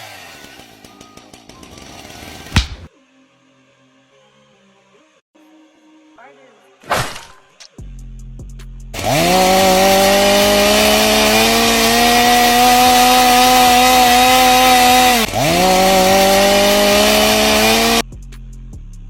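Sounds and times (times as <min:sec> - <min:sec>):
chainsaw revving: 0:00.0 - 0:02.9, 0:09.0 - 0:18.0.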